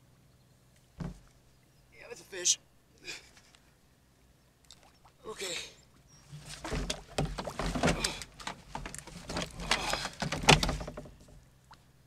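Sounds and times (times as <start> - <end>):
gear knocking against kayak hull: 6.4 - 11.4.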